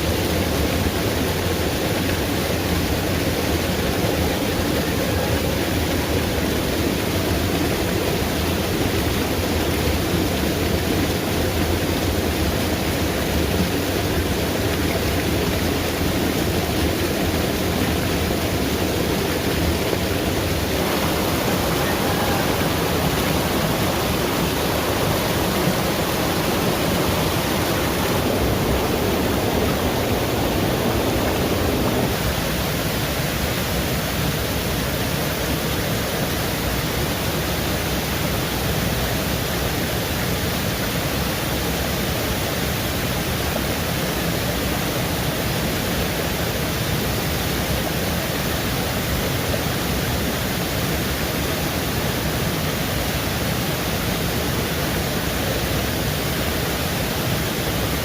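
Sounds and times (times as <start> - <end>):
steady rushing noise: 0.0 - 39.8.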